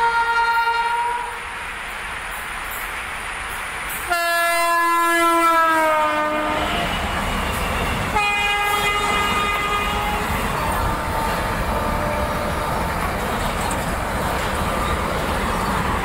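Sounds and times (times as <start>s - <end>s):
train horn blasts: 0.0s - 1.4s, 4.1s - 13.0s
train clattering on track: 0.0s - 16.0s.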